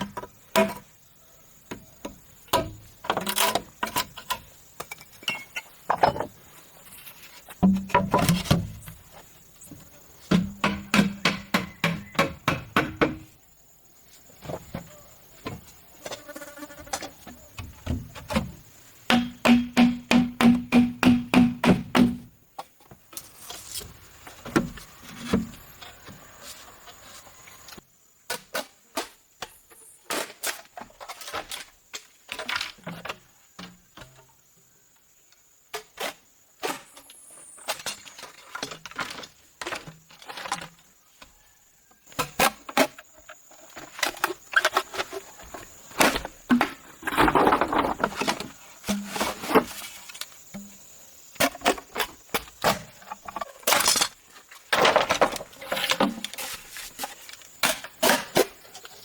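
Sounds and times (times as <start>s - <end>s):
hollow knocks on bamboo: 19.1s - 22.3s.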